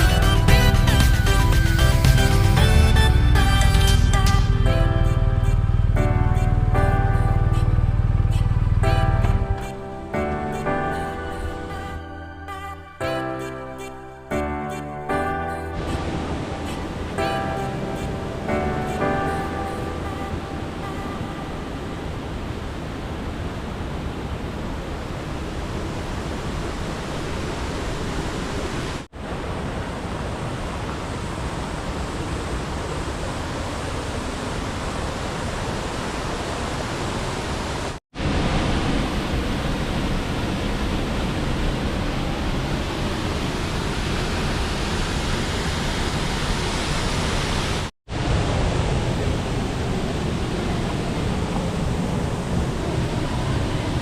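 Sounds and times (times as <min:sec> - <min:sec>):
waterfall rushing: 0:15.7 - 0:54.0.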